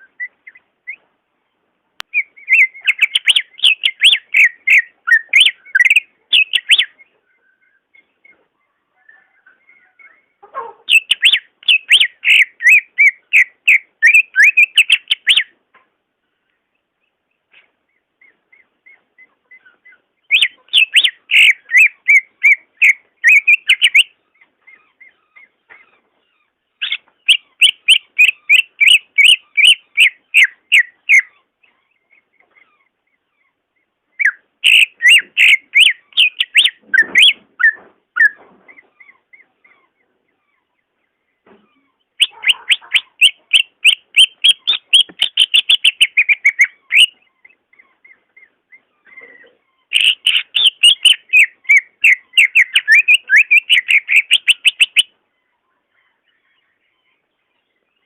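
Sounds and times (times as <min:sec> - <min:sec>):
bird singing whistled notes: 0:00.0 - 0:01.1, 0:02.1 - 0:08.4, 0:09.0 - 0:15.6, 0:19.6 - 0:24.2, 0:26.8 - 0:31.3, 0:34.2 - 0:38.4, 0:42.2 - 0:47.2, 0:49.9 - 0:55.1.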